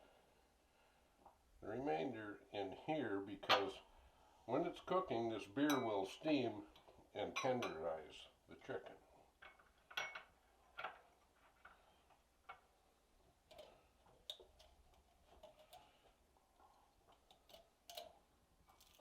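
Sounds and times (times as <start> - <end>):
kitchen items clicking and tapping: 9.4 - 11.8, 12.4 - 19.0.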